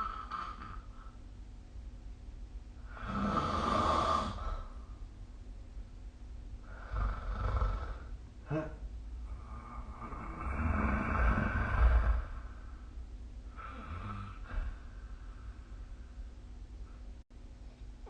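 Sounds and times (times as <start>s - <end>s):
person snoring: 0.0s - 1.2s, 2.8s - 4.8s, 6.6s - 12.9s, 13.5s - 15.7s.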